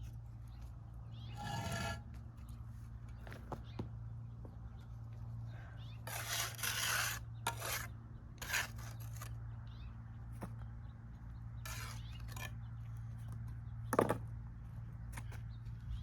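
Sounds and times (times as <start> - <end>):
trowel scraping mortar on block: 1.3 - 2.1, 6.1 - 9.4, 11.6 - 12.6.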